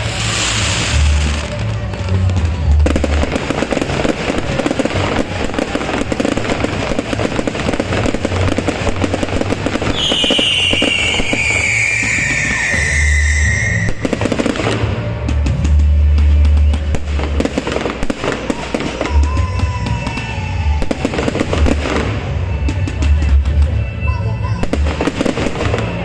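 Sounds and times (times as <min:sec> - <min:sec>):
fireworks crackling and popping: 0:00.0 - 0:26.0
falling firework whistle: 0:09.5 - 0:14.9.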